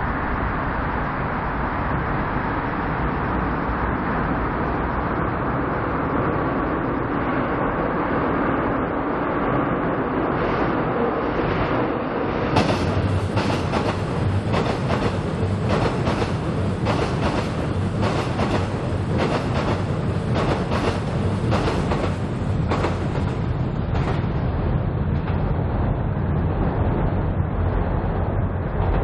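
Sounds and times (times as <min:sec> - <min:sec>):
train low rumble: 0:00.0 - 0:29.0
train wheels clacking on rail joints: 0:12.5 - 0:25.6.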